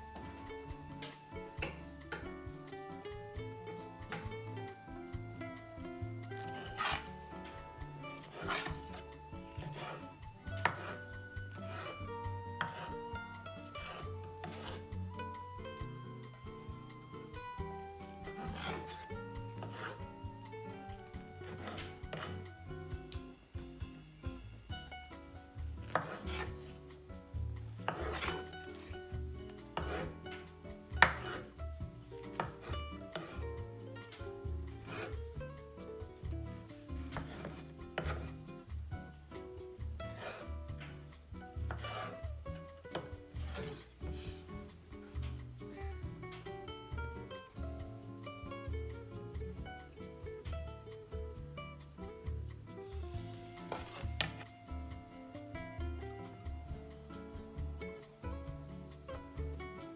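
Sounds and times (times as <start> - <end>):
scraping strokes: 0.0 - 23.0, 25.5 - 46.6, 53.3 - 54.6
gentle instrumental music: 0.0 - 59.9.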